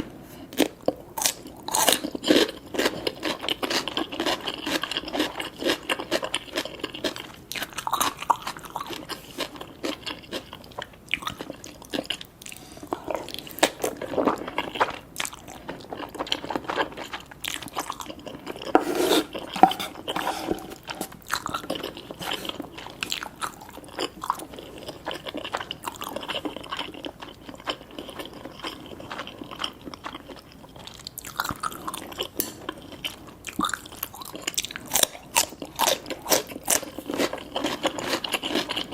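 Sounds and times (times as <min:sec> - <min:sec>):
chewing and crunching food: 0:00.2 - 0:38.9
wet mouth sounds: 0:18.6 - 0:22.6.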